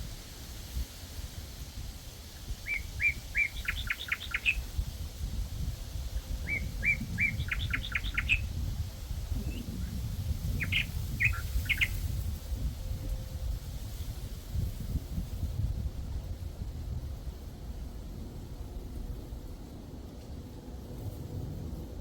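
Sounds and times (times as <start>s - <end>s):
wind rumbling on microphone: 0.0s - 22.0s
songbird singing: 2.3s - 4.9s, 6.0s - 12.2s.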